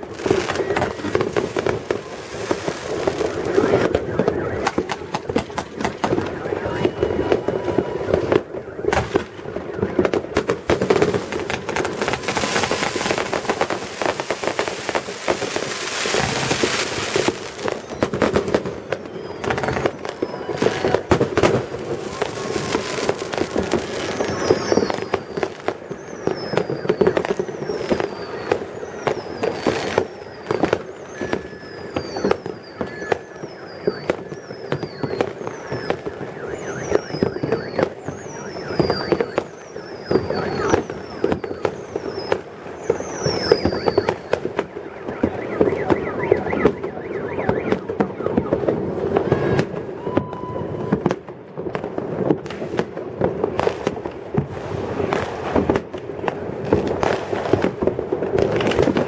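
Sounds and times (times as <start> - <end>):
fireworks crackling and banging: 0.0 - 59.0
fireworks falling whistles: 0.0 - 59.0.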